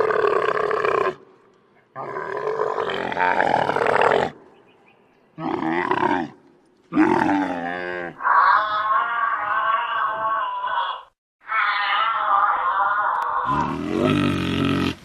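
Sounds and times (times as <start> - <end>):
large wild animals roaring: 2.0 - 4.4, 5.4 - 10.2, 11.7 - 15.0.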